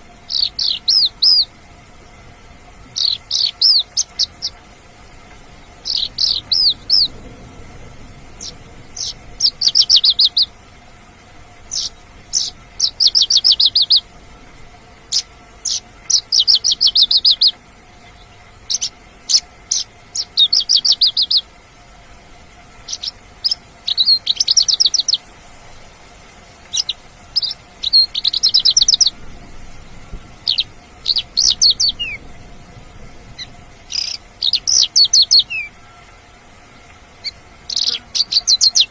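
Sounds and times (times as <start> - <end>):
lark singing trilled phrases: 0.3 - 1.5, 3.0 - 4.6, 5.8 - 7.1, 8.4 - 10.5, 11.7 - 14.1, 15.1 - 17.6, 18.7 - 21.5, 22.9 - 25.3, 26.7 - 29.2, 30.4 - 32.2, 33.9 - 36.0, 37.2 - 38.9.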